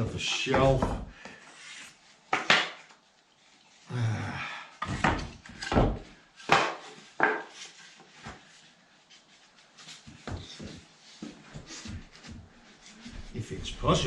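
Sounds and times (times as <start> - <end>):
wood scraping: 0.0 - 3.0, 4.8 - 14.0.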